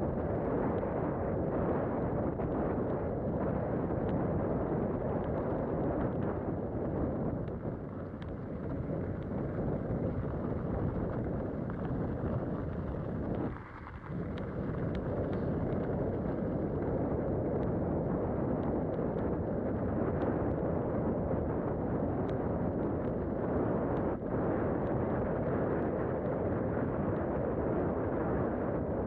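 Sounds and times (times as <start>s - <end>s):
wind buffeting microphone: 0.0s - 29.0s
faint ticks: 7.2s - 19.4s.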